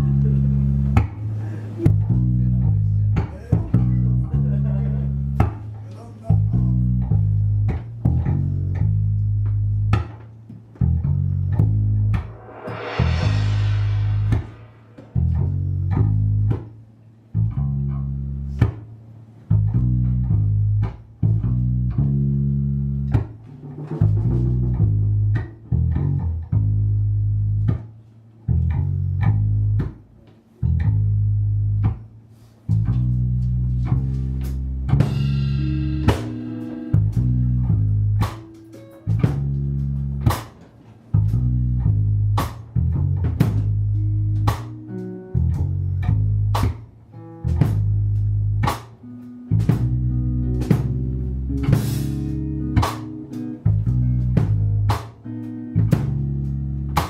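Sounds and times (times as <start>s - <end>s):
guitar: 0.0s - 57.0s
music with deep bass line: 0.0s - 57.0s
drum hits: 12.0s - 15.3s, 34.9s - 37.4s.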